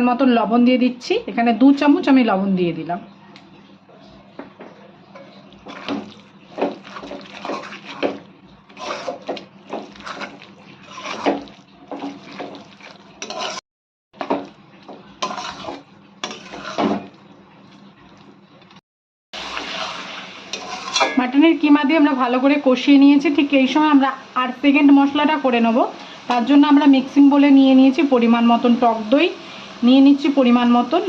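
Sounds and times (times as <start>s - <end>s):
metal spatula scraping a pan: 5.2s - 13.6s, 15.2s - 17.2s, 19.4s - 21.3s
faint sizzle: 14.2s - 18.8s, 19.4s - 31.0s.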